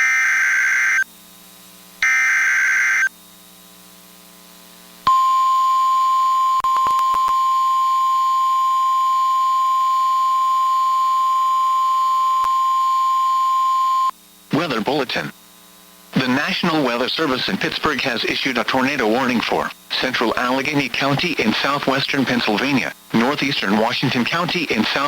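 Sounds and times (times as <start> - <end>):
steady warning alarm tone: 0.0 - 1.1, 2.0 - 3.1.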